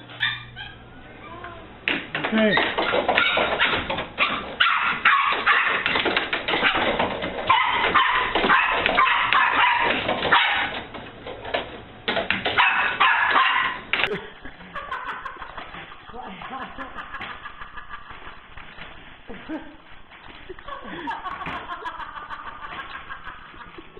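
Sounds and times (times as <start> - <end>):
dog barking and yipping: 0.0 - 0.9, 3.0 - 10.9, 12.4 - 14.1
dog whimpering: 0.2 - 1.7.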